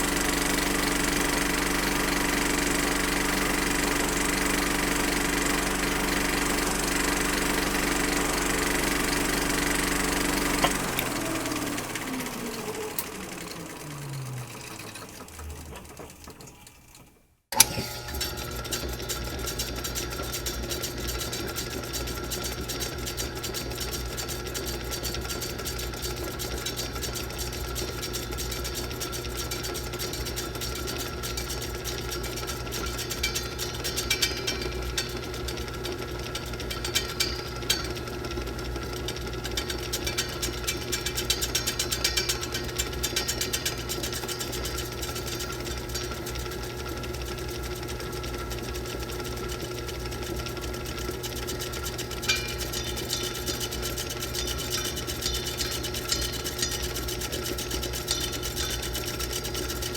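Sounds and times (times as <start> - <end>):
projector motor hum: 0.0 - 16.3, 29.9 - 59.9
louder mechanical clicks: 0.0 - 16.4
film projector clatter: 0.0 - 59.9.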